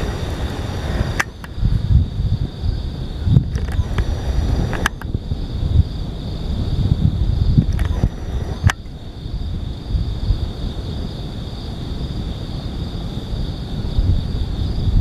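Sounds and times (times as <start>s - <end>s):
cicadas singing: 0.0s - 15.0s
wind rumbling on microphone: 0.0s - 15.0s
sharp clicks: 0.8s - 1.6s, 3.4s - 5.2s, 7.6s - 9.0s.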